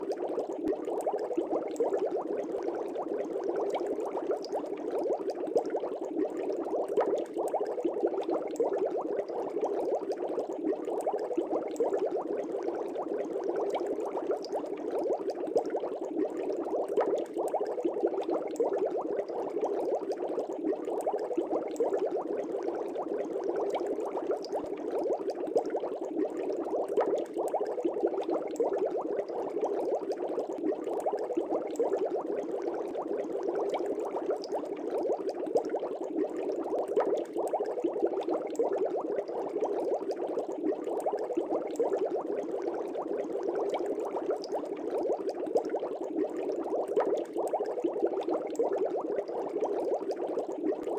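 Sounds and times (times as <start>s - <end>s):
air bubbles in water: 0.0s - 50.9s.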